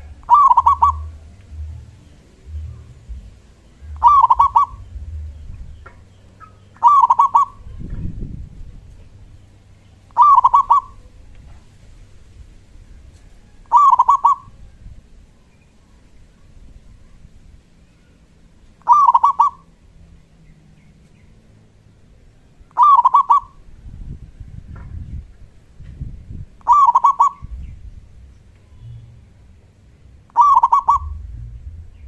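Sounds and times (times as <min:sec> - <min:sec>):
dove cooing: 0:00.0 - 0:05.3, 0:06.4 - 0:07.9, 0:10.1 - 0:11.2, 0:13.5 - 0:14.6, 0:18.8 - 0:19.7, 0:22.8 - 0:23.6, 0:26.6 - 0:27.7, 0:30.3 - 0:31.8.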